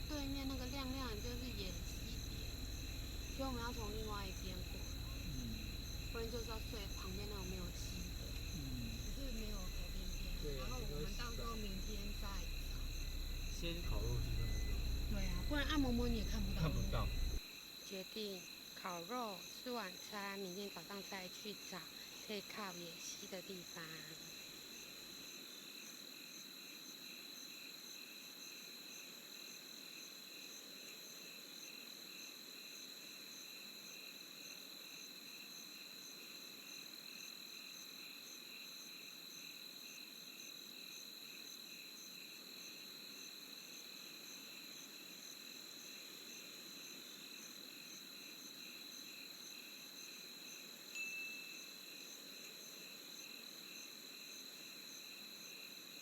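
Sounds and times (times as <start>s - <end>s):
insect high trill: 0.0s - 17.4s, 51.0s - 52.0s
pulsing insect chirps: 0.0s - 17.4s.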